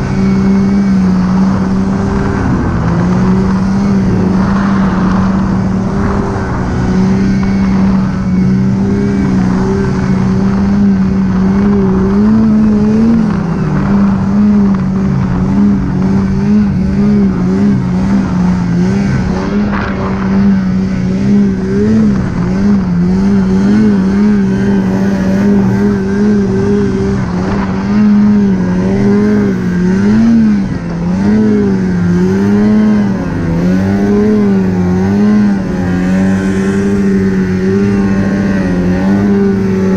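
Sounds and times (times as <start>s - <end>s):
snowmobile engine revving: 0.0s - 39.9s.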